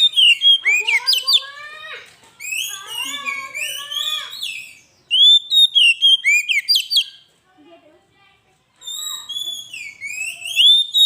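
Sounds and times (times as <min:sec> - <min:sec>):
bird whistled notes: 0:00.0 - 0:01.4, 0:02.4 - 0:07.2, 0:08.8 - 0:11.0
bird warbling: 0:00.0 - 0:01.6, 0:08.8 - 0:11.0.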